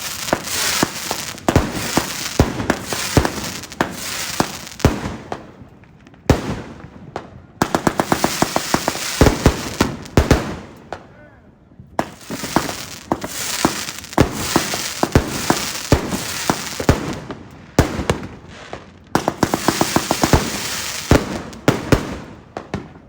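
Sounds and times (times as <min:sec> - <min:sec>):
firework hiss: 0:00.0 - 0:04.9, 0:07.8 - 0:10.4, 0:12.0 - 0:17.2, 0:19.3 - 0:21.7
firework bangs: 0:00.0 - 0:11.1, 0:12.0 - 0:23.0.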